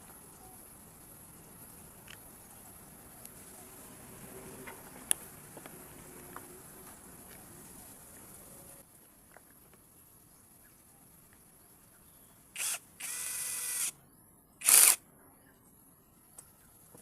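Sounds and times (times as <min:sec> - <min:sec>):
small electric motor whine: 0:12.6 - 0:14.0, 0:14.6 - 0:15.0.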